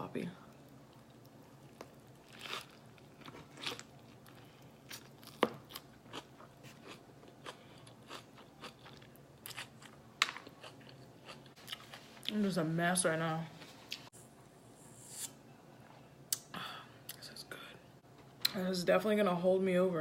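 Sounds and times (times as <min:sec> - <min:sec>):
person chewing crunchy food: 0:00.7 - 0:12.0.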